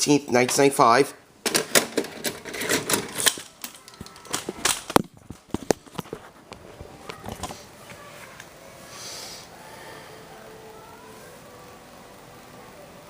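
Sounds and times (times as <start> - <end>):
cassette and case clicking: 1.5 - 7.4.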